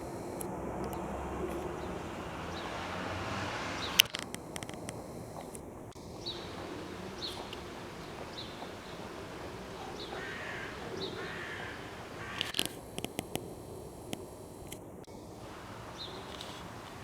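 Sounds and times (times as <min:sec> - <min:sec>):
sharp clicks: 0:00.0 - 0:01.8, 0:03.7 - 0:09.1, 0:12.2 - 0:15.2
birds chirping: 0:00.0 - 0:17.0
harsh bird calls: 0:06.0 - 0:12.8, 0:15.1 - 0:17.0.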